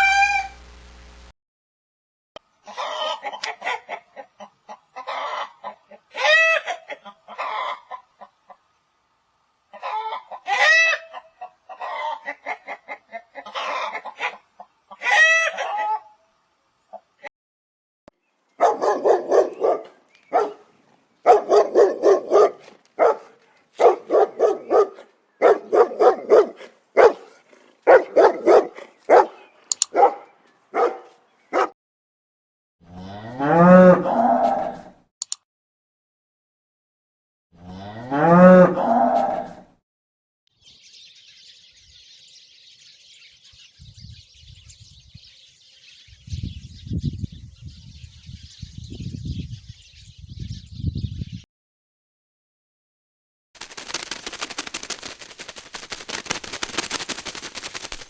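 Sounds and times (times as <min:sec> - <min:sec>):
chickens cackling: 0:02.6 - 0:08.7, 0:09.7 - 0:16.2, 0:18.6 - 0:20.6, 0:21.3 - 0:31.7
chickens clucking: 0:02.6 - 0:08.7, 0:09.7 - 0:16.1.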